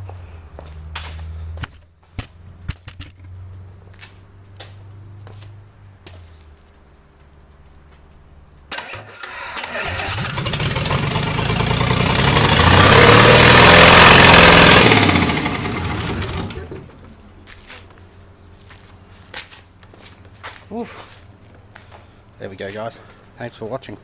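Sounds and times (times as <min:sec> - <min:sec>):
diesel engine running: 0:08.7 - 0:17.6.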